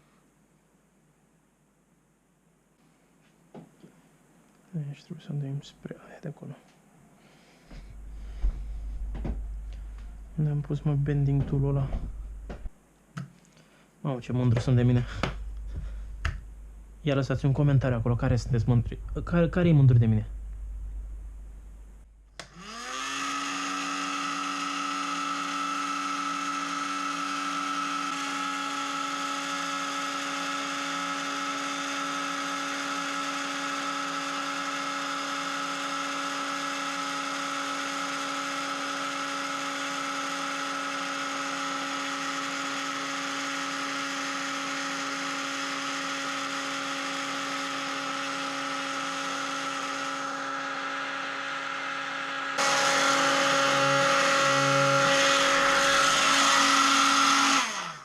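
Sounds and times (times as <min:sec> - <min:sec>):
heat gun fan blowing: 0:07.3 - 0:12.8, 0:22.4 - 0:58.0.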